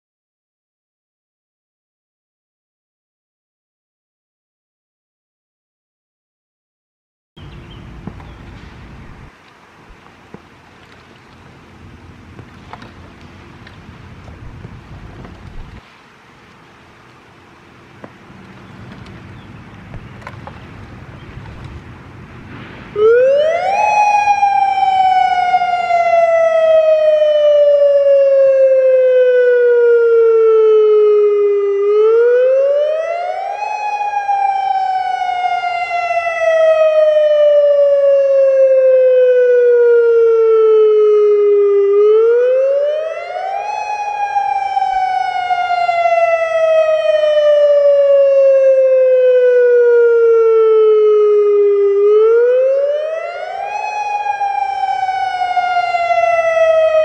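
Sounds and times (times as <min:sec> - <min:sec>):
outdoor warning siren wailing: 0:17.2 - 0:57.0.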